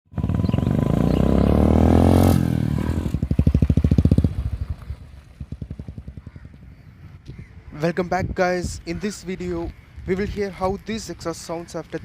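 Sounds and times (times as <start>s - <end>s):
motorcycle engine revving: 0.1s - 6.7s.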